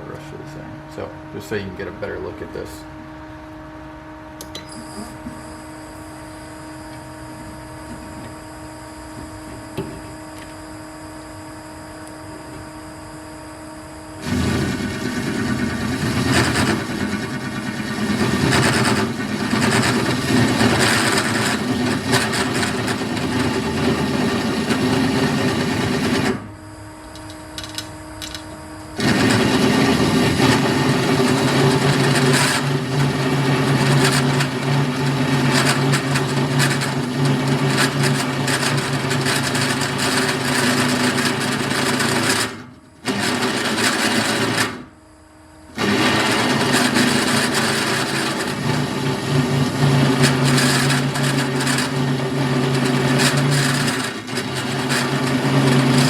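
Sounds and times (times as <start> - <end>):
drill press motor hum: 0.0 - 56.0
cutter cutting steel: 14.2 - 26.4, 45.8 - 56.0.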